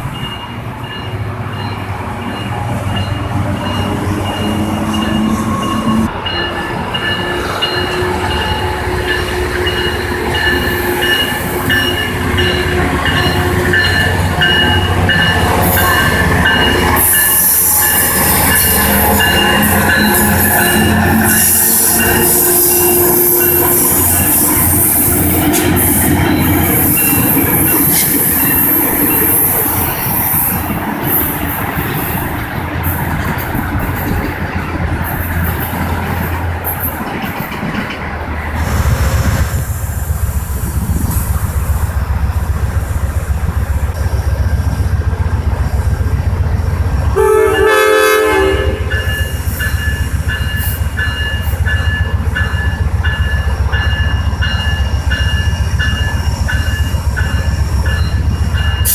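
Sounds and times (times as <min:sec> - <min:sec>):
locomotive engine drone: 0:00.0 - 0:58.9
train horn blast: 0:07.2 - 0:24.9, 0:47.2 - 0:49.2
train wheels rolling with hiss: 0:07.2 - 0:47.2, 0:48.6 - 0:58.9.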